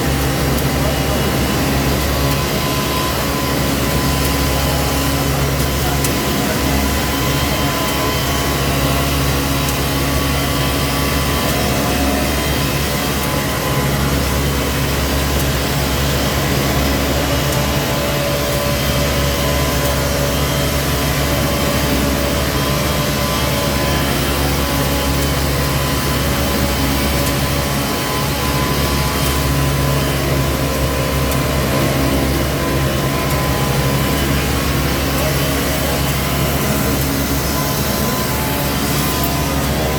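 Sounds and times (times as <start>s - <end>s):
construction machinery engine hum: 0.0s - 39.9s.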